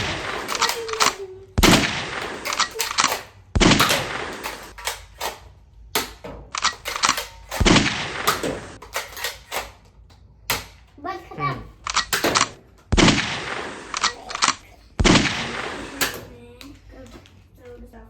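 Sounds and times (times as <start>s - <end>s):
toy gun bangs: 0.0s - 9.9s, 10.5s - 11.0s, 11.8s - 16.4s
quick sharp clicks: 11.8s - 16.2s.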